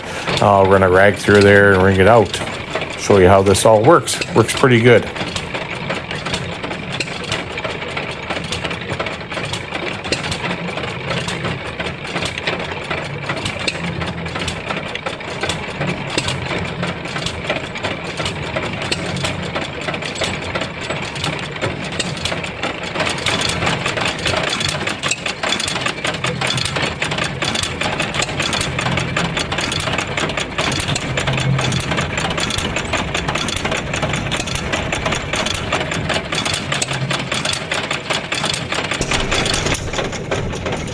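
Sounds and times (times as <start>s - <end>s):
stationary engine running: 0.0s - 40.9s
washing machine mechanism clattering: 0.0s - 40.9s.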